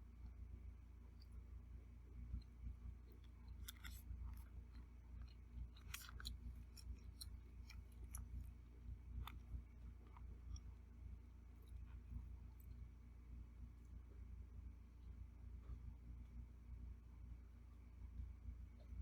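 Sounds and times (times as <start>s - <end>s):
low steady hum: 0.0s - 19.0s
chewing and cutlery clicks: 3.1s - 8.5s.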